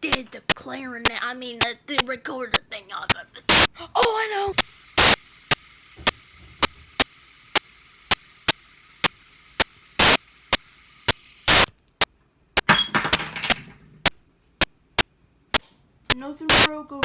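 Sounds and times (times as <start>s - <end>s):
sharp clicks: 0.0s - 2.7s, 3.4s - 3.7s, 4.5s - 12.7s, 14.0s - 16.7s
static hiss: 3.4s - 11.8s, 16.5s - 16.7s
ragged burst of noise: 3.5s - 3.8s, 4.5s - 11.7s.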